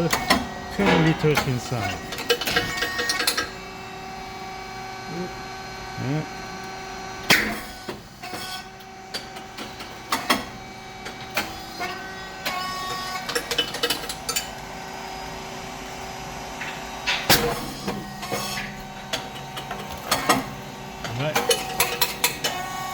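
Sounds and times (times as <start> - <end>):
clicks and metallic knocks: 0.0 - 3.5
machine motor and fan hum: 0.0 - 22.9.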